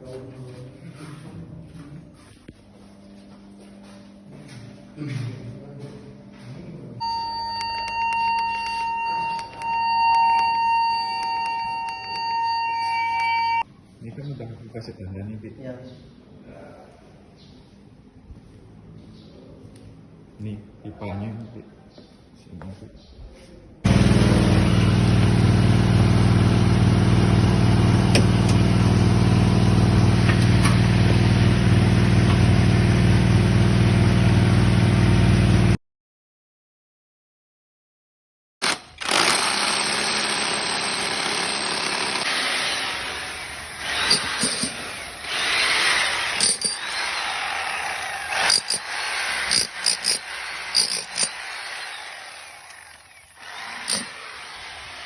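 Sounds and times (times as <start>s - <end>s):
engine running with low hum: 23.9s - 35.8s.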